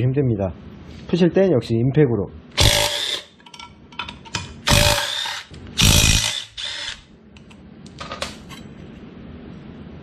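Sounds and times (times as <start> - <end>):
impact wrench hammering: 2.6 - 3.3, 4.7 - 7.0.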